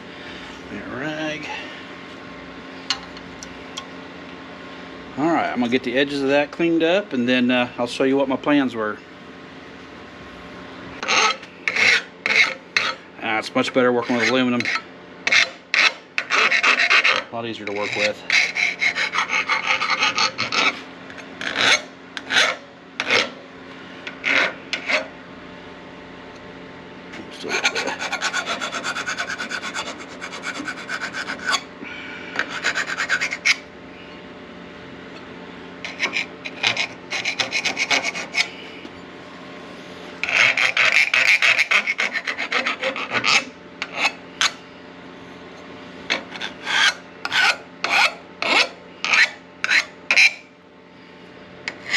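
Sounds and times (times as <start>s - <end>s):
hand file rasping on metal: 11.0s - 23.4s, 24.1s - 25.1s, 27.4s - 31.7s, 32.4s - 33.6s, 35.8s - 38.6s, 40.2s - 44.6s, 46.1s - 50.4s, 51.7s - 51.9s.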